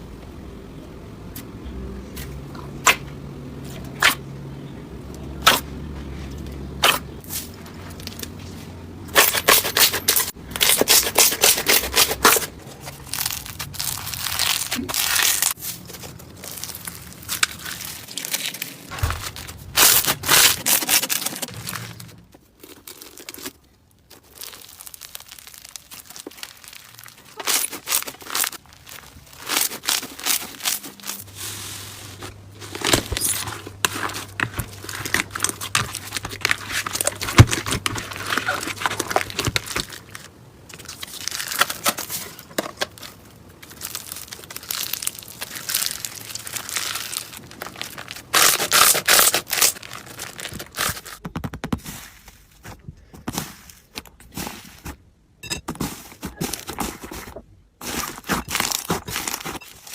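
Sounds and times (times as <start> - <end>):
slime crackling and popping: 22.6 - 31.2, 42.8 - 51.5.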